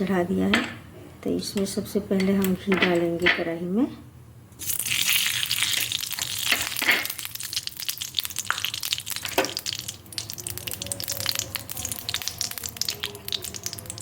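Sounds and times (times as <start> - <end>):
ghee sizzling and crackling: 4.6 - 14.0.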